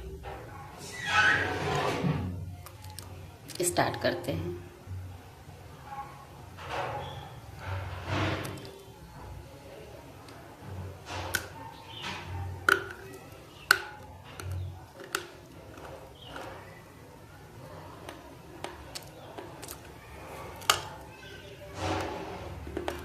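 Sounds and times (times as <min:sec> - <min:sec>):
chewing: 0:17.6 - 0:23.0.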